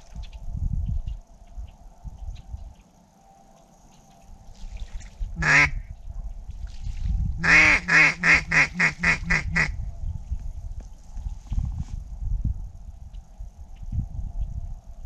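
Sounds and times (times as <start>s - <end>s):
duck call quacking: 5.4s - 5.8s, 7.4s - 9.7s.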